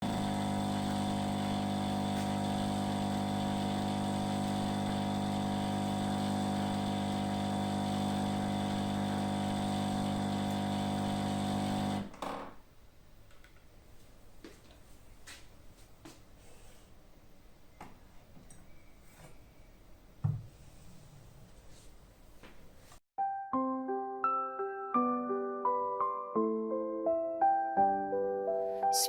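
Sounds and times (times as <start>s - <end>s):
machine electric hum: 0.0s - 12.1s.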